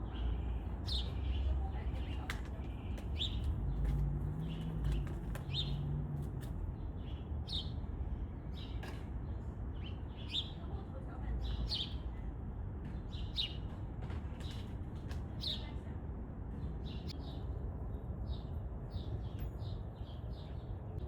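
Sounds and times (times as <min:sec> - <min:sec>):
birds chirping and ticking: 0:00.1 - 0:06.1.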